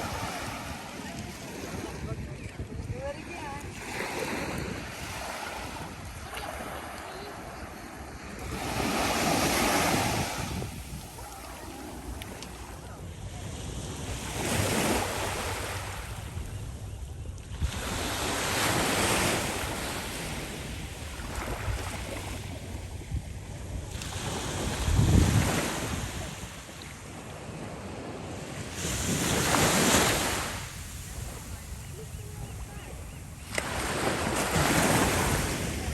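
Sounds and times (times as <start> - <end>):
wind buffeting microphone: 0.0 - 6.4, 8.3 - 12.3, 21.5 - 26.6
ocean surf breaking: 8.3 - 12.1.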